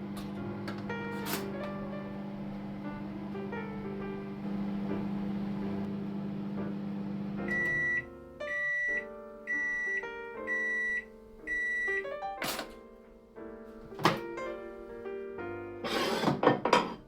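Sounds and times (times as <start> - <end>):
microwave oven humming: 0.0 - 12.7.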